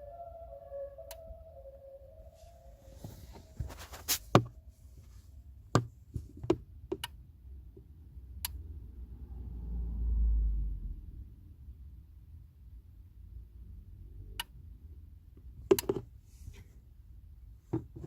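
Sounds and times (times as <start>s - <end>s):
low rumble: 0.0s - 5.0s.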